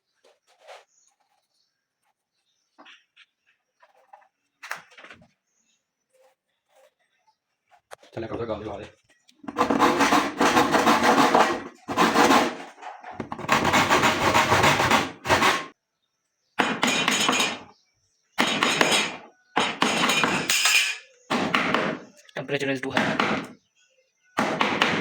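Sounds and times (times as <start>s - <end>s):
tools knocking on wood: 9.4s - 15.7s, 16.6s - 17.7s, 18.4s - 22.1s, 22.9s - 23.6s.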